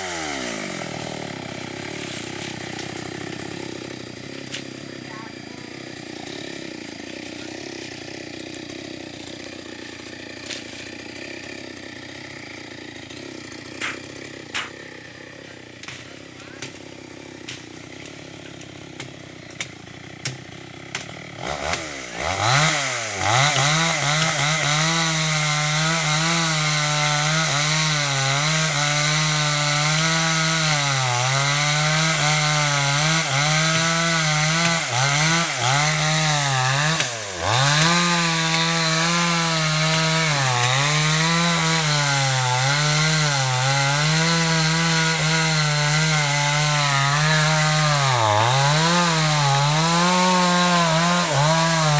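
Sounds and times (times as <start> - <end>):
chainsaw cutting wood: 0.0 - 51.9.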